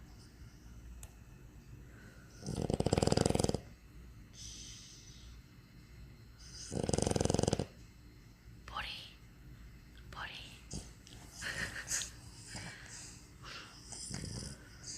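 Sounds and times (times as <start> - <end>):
dog snoring: 2.3 - 3.8, 6.4 - 7.8, 13.8 - 14.9.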